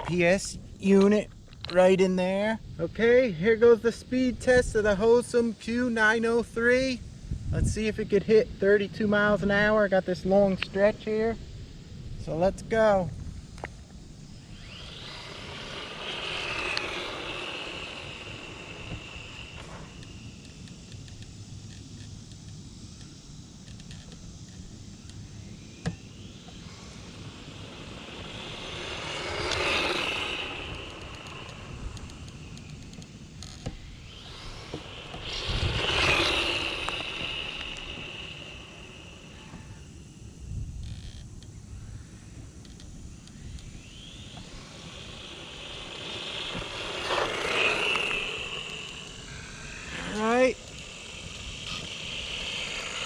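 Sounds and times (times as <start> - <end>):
toy truck motor whine: 13.5 - 53.0.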